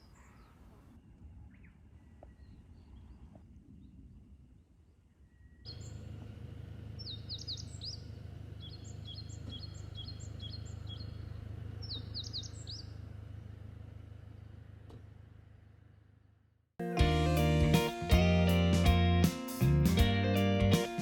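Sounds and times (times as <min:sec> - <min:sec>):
bird chirping: 0:05.2 - 0:13.1
low outdoor rumble: 0:05.7 - 0:16.3, 0:17.0 - 0:21.0.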